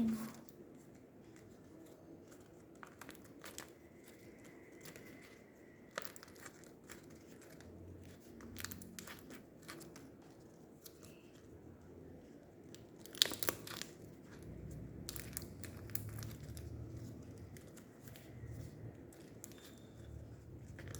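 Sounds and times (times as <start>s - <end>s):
tape crinkling clicks: 12.7s - 18.3s.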